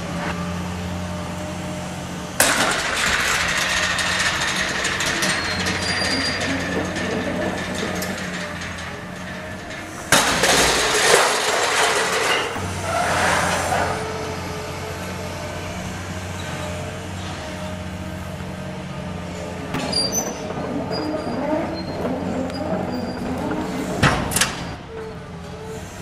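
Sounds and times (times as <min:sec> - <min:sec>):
demolition machinery engine hum: 0:00.0 - 0:26.0
debris clinking: 0:02.4 - 0:12.6
crash of falling rubble: 0:10.1 - 0:12.6.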